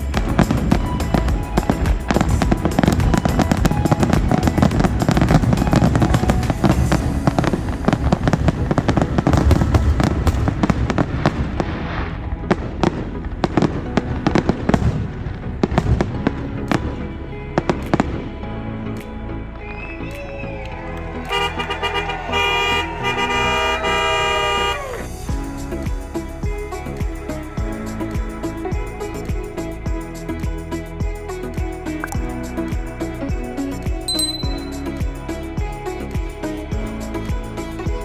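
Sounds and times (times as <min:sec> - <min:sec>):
fireworks bangs and crackling: 0:00.0 - 0:17.0.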